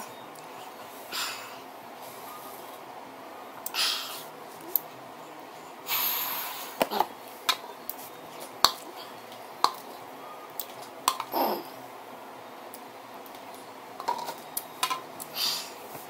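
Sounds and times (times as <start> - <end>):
noisy breath: 0.6 - 2.6, 5.8 - 6.8, 15.3 - 16.0.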